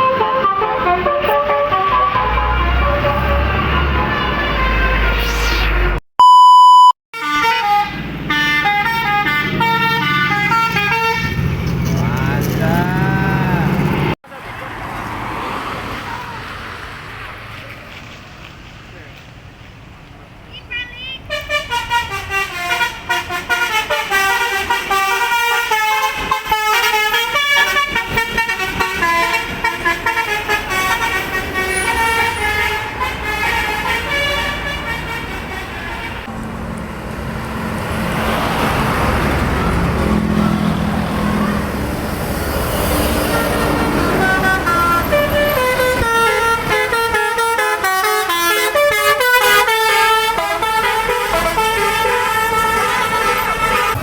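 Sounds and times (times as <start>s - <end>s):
bus horn playing a tune: 0.0s - 5.2s, 7.1s - 11.6s, 21.0s - 36.3s, 42.8s - 54.0s.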